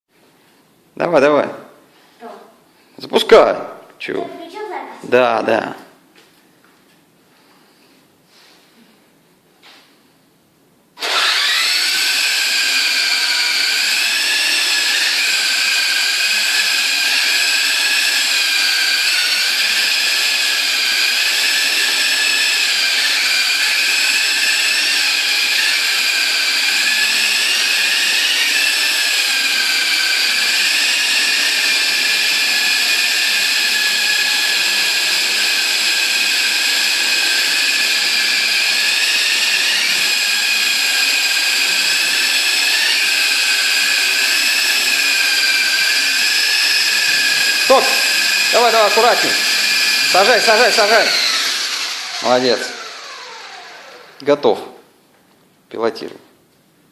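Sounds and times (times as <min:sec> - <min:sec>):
model helicopter motor whine: 0:11.0 - 0:54.2.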